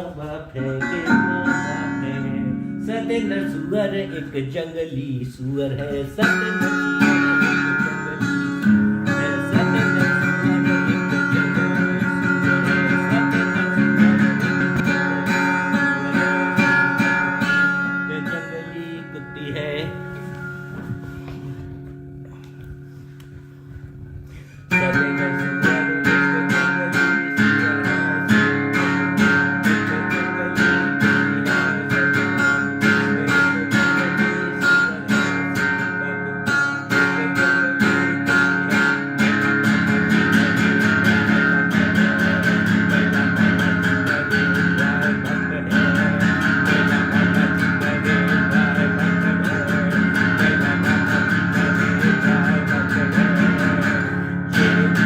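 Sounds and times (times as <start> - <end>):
guitar strumming: 0.0 - 55.0.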